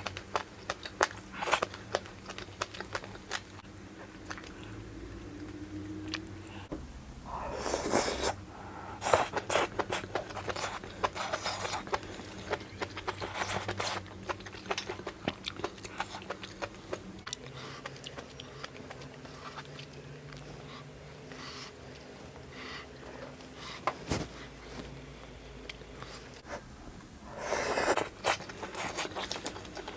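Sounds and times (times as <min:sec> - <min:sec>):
wet chewing: 0:00.0 - 0:06.4, 0:09.0 - 0:22.5, 0:27.6 - 0:29.9.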